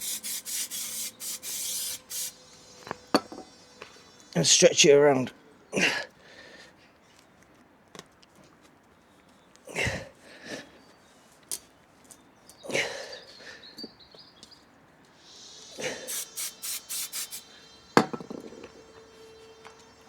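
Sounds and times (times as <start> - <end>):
aerosol spray hissing bursts: 0.0 - 4.4, 15.2 - 17.9.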